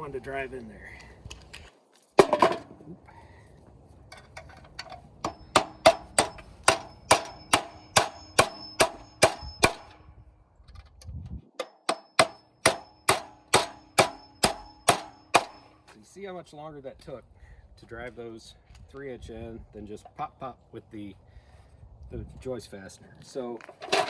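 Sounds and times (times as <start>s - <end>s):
hammer striking metal nails: 4.8s - 10.0s, 11.5s - 15.8s.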